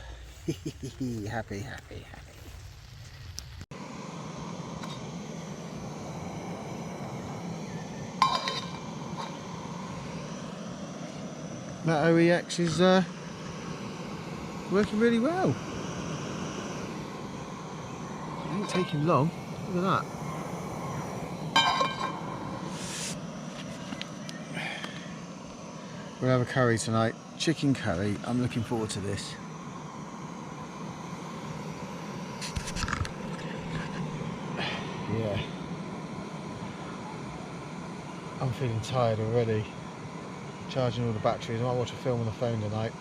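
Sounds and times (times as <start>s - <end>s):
gas camping stove roaring: 0.0s - 43.0s.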